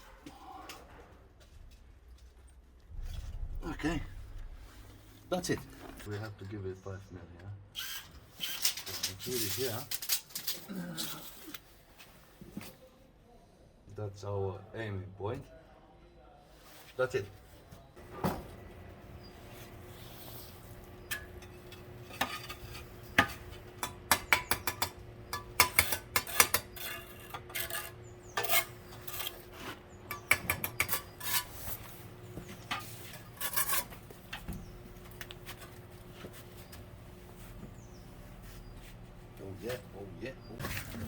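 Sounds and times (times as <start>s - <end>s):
trowel scraping on bricks: 19.4s - 34.2s.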